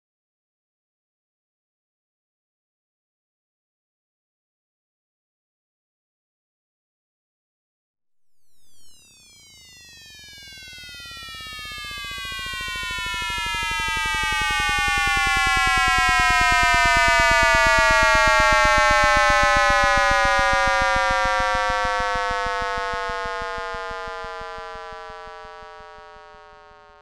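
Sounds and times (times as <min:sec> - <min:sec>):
synthesized falling drone: 0:08.4 - 0:27.0
fast even buzz: 0:08.5 - 0:27.0.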